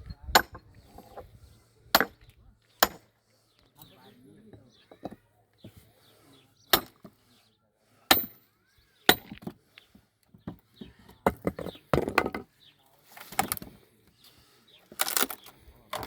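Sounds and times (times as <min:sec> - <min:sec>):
sledgehammer striking steel wedge: 0:02.8 - 0:03.1, 0:08.1 - 0:08.4.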